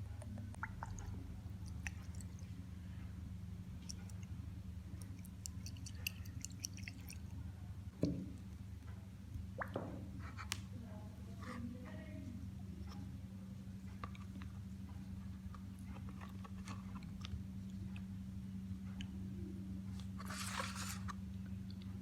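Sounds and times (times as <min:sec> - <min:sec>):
wet squishing: 0:00.2 - 0:02.7, 0:03.7 - 0:07.4.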